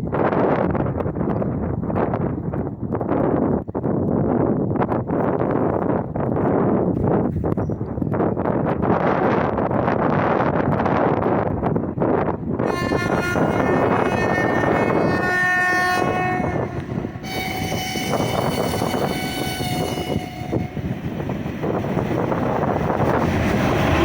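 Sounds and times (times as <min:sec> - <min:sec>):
freight train rumbling: 0:00.0 - 0:24.0
wind: 0:00.0 - 0:24.0
locomotive horn blasts: 0:12.7 - 0:21.0.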